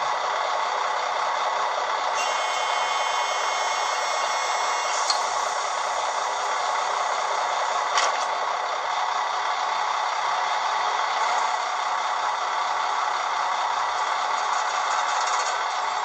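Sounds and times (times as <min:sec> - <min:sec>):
high several-toned whine: 0:02.2 - 0:07.9.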